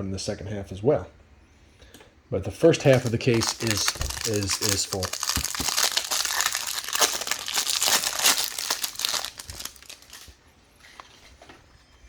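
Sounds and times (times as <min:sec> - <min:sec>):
plastic wrapping crinkling and tearing: 0:02.8 - 0:10.4.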